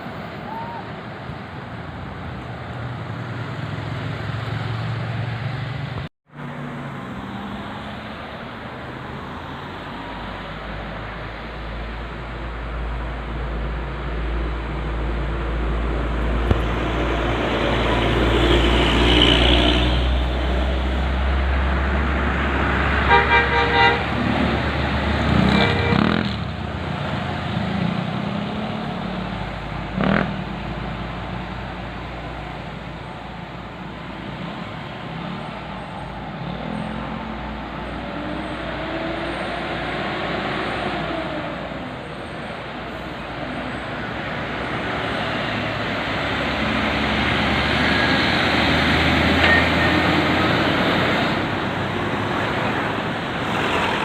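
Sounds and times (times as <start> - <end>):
road traffic noise: 0.0 - 54.0
musical bus horn: 23.1 - 24.2, 25.4 - 26.2.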